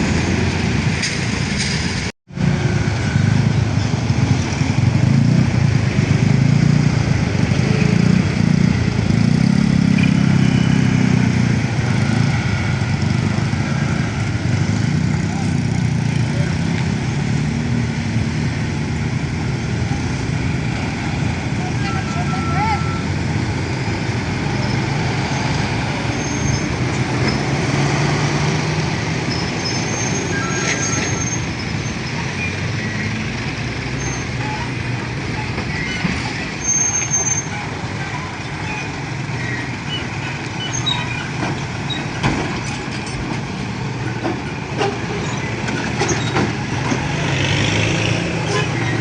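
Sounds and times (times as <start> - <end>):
heavy vehicle engine rumble: 0.0 - 49.0
traffic noise: 0.0 - 49.0
high squeaks and clicks: 29.2 - 33.1, 34.0 - 43.2.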